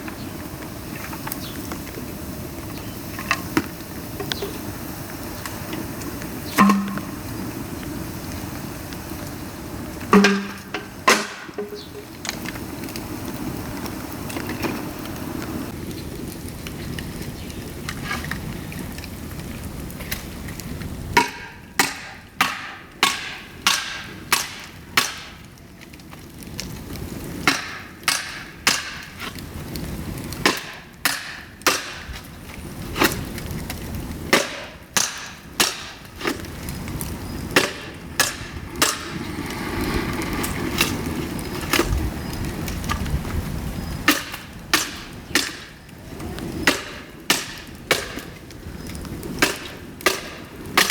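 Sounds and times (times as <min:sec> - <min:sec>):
dry bamboo cracking: 0:00.0 - 0:50.9.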